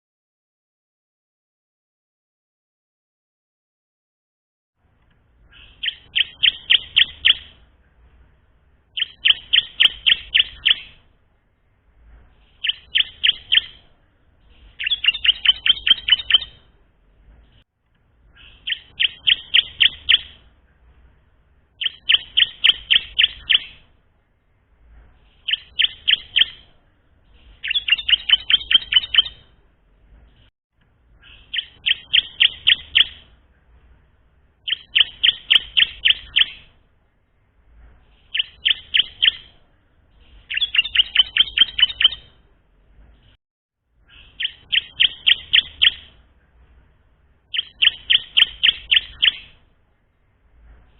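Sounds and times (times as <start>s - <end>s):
bird chirping song phrases: 5.4s - 8.3s, 8.9s - 11.1s, 12.3s - 16.8s, 18.2s - 20.9s, 21.7s - 23.9s, 25.2s - 29.6s, 31.1s - 33.7s, 34.6s - 36.8s, 38.0s - 42.5s, 44.0s - 46.6s, 47.4s - 49.7s.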